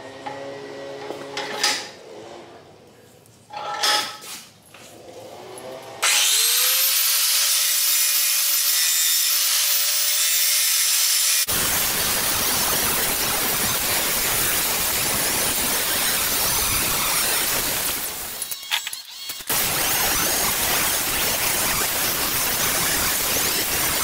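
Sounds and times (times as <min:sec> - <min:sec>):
power tool motor whining: 0:06.0 - 0:08.0, 0:11.4 - 0:21.0
tool working on metal: 0:06.0 - 0:24.0
loud hiss: 0:11.5 - 0:18.4.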